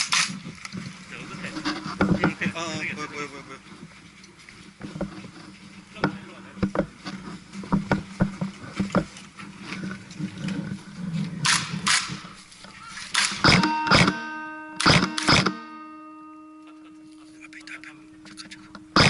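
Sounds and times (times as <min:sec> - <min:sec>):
airsoft guns popping: 0:00.0 - 0:00.8, 0:11.4 - 0:12.2, 0:13.1 - 0:14.2.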